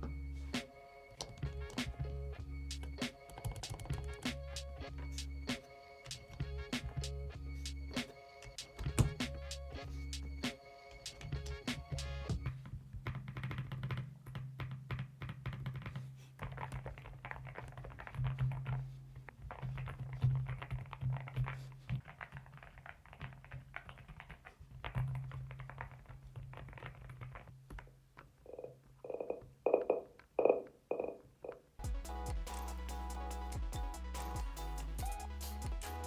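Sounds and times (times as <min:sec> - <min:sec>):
background music: 0:00.0 - 0:12.5, 0:31.8 - 0:36.0
mechanical keyboard typing: 0:02.7 - 0:04.3.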